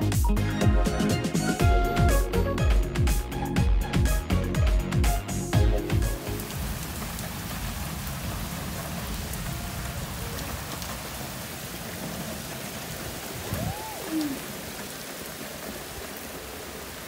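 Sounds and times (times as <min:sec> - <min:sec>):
steady rain hiss: 0:05.3 - 0:17.0.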